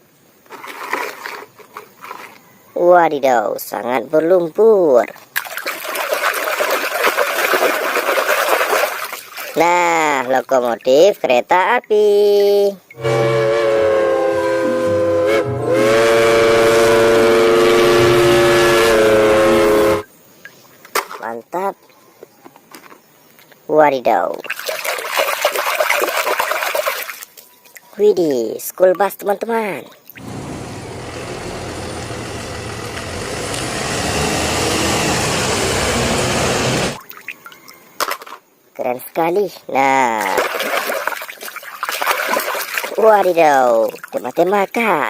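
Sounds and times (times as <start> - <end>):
chord train whistle: 12.9 - 20.1, 30.2 - 37.0
bus engine running: 13.1 - 20.0, 30.2 - 37.0.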